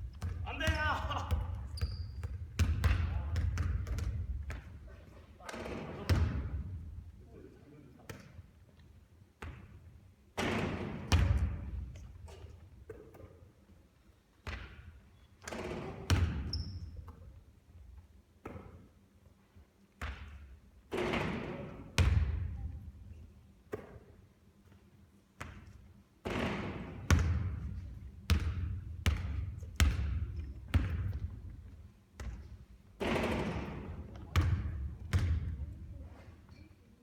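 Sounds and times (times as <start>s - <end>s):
basketball bouncing on court: 0.0s - 4.9s, 9.4s - 12.1s, 14.4s - 17.3s, 18.4s - 18.8s, 20.0s - 22.8s, 23.7s - 24.2s, 25.4s - 35.8s.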